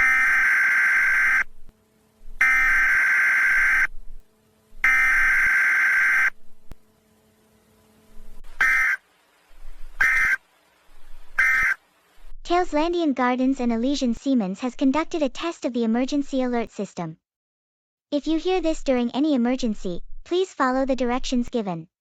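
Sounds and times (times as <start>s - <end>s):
buzzing warble data tones: 0.0s - 12.3s.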